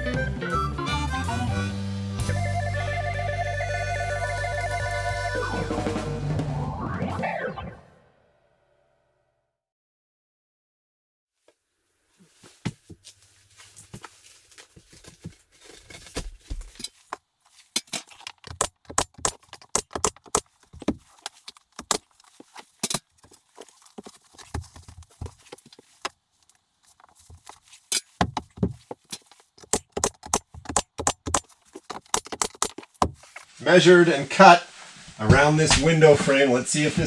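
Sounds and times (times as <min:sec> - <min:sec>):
wood knocking on wood: 0:18.2 - 0:21.1, 0:28.2 - 0:33.2.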